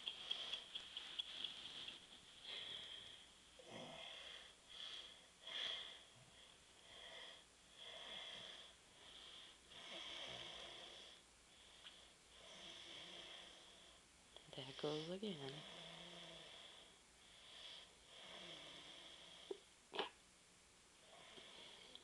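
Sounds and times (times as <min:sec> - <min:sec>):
wheezy breathing and light snoring: 0:00.0 - 0:20.1, 0:21.0 - 0:22.0.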